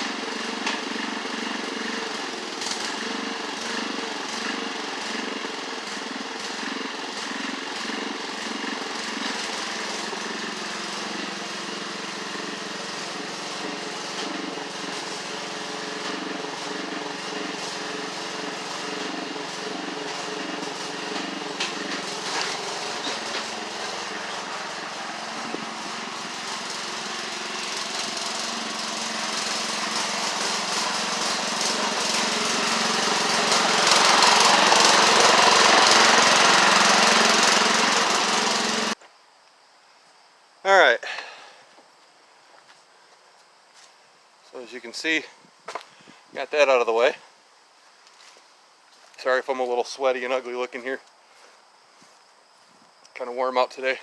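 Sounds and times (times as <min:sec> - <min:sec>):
lawn tractor engine running: 0:00.0 - 0:39.0.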